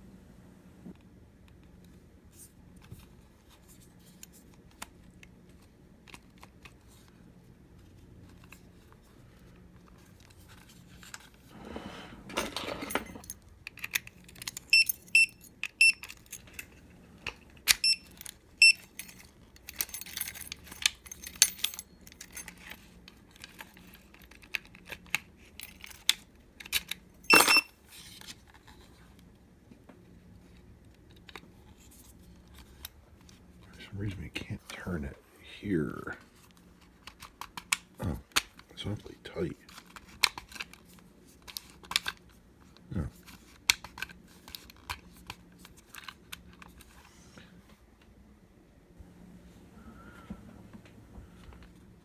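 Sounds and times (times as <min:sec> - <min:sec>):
metal lock clicks and rattles: 0:12.4 - 0:16.7, 0:17.6 - 0:27.7.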